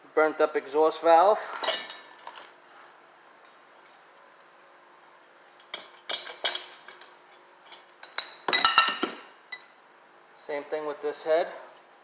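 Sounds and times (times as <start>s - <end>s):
metal engine parts clinking: 1.6s - 2.2s, 5.6s - 9.6s.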